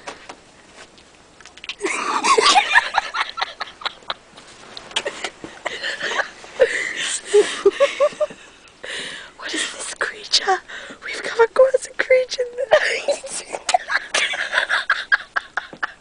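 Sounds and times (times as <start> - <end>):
people laughing: 1.8 - 4.2, 5.0 - 8.4, 12.7 - 16.0.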